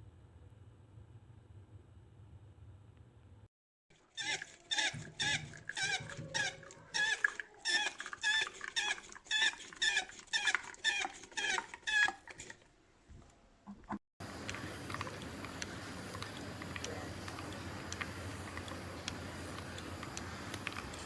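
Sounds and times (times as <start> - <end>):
hand pump squeaking: 4.2 - 12.5.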